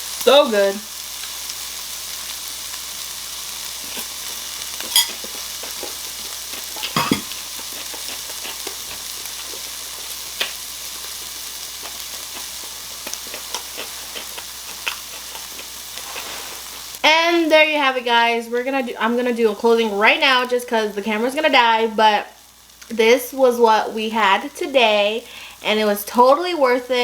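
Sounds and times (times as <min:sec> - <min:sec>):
meat sizzling on a grill: 0:00.0 - 0:27.0
fat crackling: 0:02.2 - 0:17.7.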